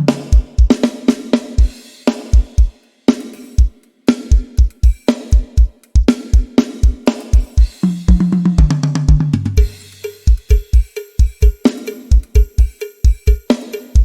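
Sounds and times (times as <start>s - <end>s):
drum kit playing a beat: 0.0s - 14.0s
tom fill: 5.6s - 14.0s.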